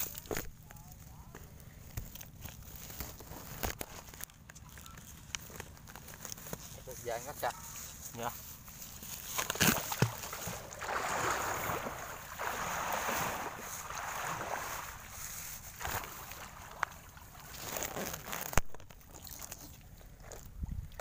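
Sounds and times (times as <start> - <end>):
water sloshing and splashing: 8.6 - 21.0.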